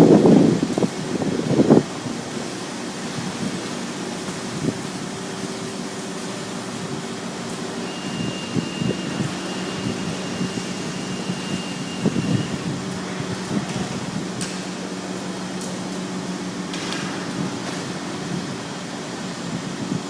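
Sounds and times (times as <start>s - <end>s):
strong wind gusting: 0.0s - 2.4s
steady low hum: 0.0s - 20.0s
thin high whistle: 7.8s - 12.6s.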